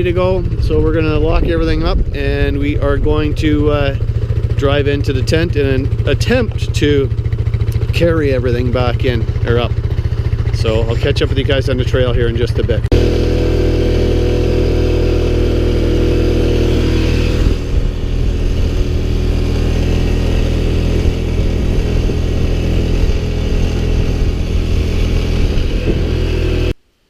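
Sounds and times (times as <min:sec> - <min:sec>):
quad engine running: 0:00.0 - 0:26.8.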